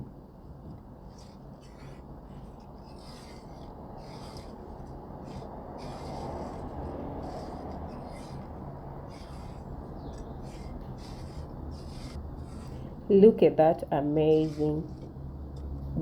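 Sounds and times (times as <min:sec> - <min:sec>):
spatula scraping a pan: 0:01.1 - 0:12.9, 0:14.3 - 0:15.1.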